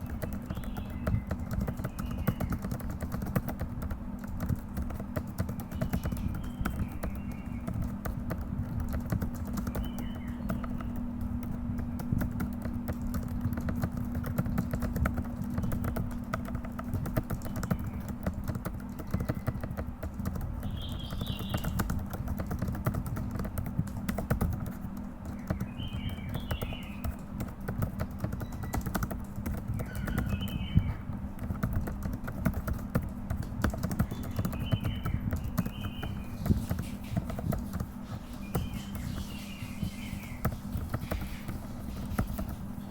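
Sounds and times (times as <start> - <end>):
fast keyboard typing: 0.0 - 42.9.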